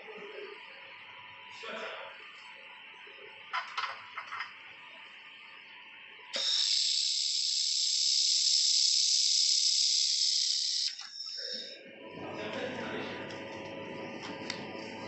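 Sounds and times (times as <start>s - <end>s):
laser welder hissing: 6.4s - 11.8s.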